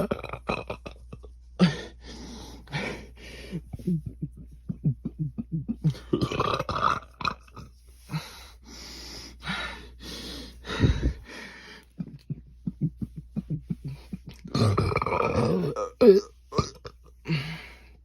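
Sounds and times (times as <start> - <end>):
person burping: 0.0 - 1.9, 4.8 - 7.7, 14.2 - 17.4
noisy breathing: 1.6 - 4.0, 7.9 - 14.4.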